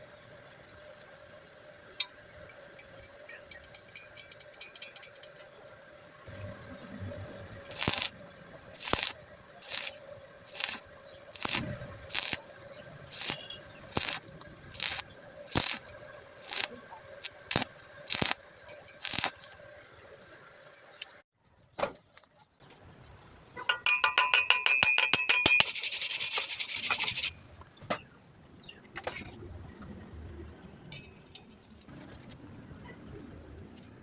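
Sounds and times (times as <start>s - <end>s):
harsh hiss: 7.7s - 8.1s, 8.8s - 12.5s, 13.1s - 15.8s, 16.4s - 18.4s, 19.0s - 19.4s, 25.6s - 27.3s
rapid clicks: 7.7s - 8.1s, 8.8s - 19.6s.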